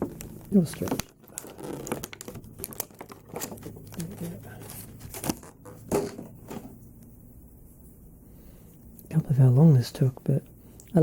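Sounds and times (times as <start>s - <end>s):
plastic packaging crinkling: 0.0s - 6.0s.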